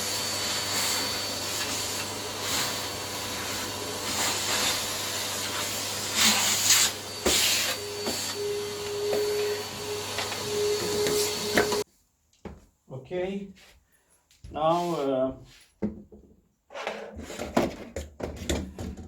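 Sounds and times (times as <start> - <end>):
vacuum cleaner running: 0.0 - 11.8.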